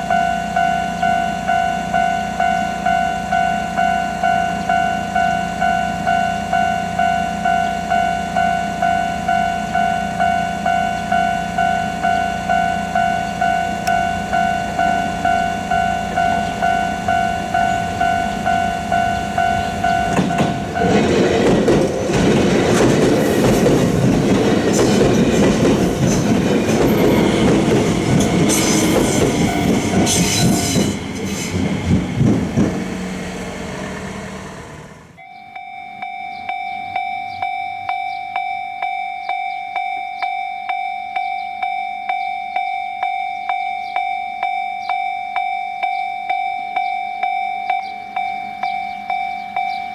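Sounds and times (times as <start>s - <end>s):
train rumbling and clattering: 0.0s - 35.2s
level-crossing warning bell: 0.0s - 49.9s.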